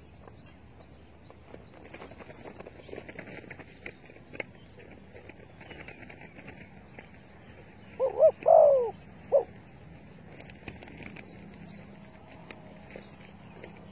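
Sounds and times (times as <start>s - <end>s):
dove cooing: 7.9s - 9.6s.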